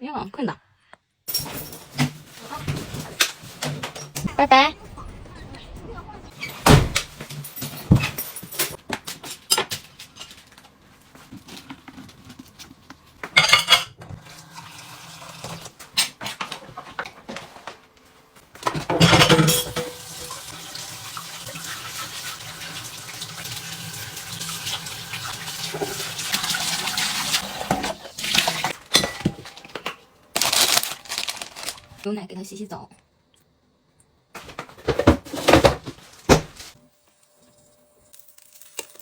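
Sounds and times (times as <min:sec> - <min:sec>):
dishes and utensils clinking: 0:01.3 - 0:04.2, 0:13.2 - 0:14.0, 0:18.6 - 0:20.5, 0:27.5 - 0:30.0
tap water running into sink: 0:14.2 - 0:15.8, 0:19.6 - 0:28.8.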